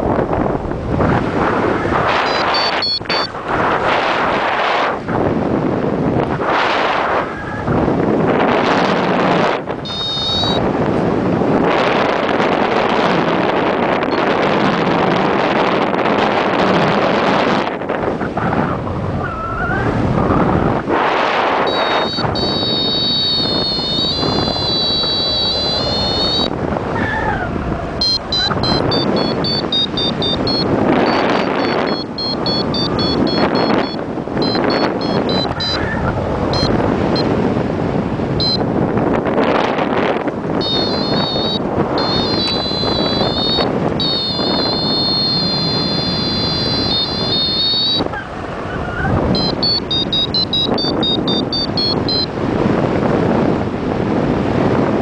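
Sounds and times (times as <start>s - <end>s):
wind rushing over microphone: 0.0s - 55.0s
electronic variometer tone: 2.0s - 3.4s, 8.8s - 10.8s, 14.0s - 14.8s, 21.4s - 26.6s, 28.0s - 37.4s, 38.3s - 38.8s, 40.4s - 48.2s, 49.2s - 52.4s
quick electronic beeps: 2.2s - 3.4s, 9.8s - 10.6s, 21.6s - 26.5s, 28.0s - 35.8s, 36.6s - 37.3s, 38.4s - 38.6s, 40.6s - 48.1s, 49.3s - 52.3s.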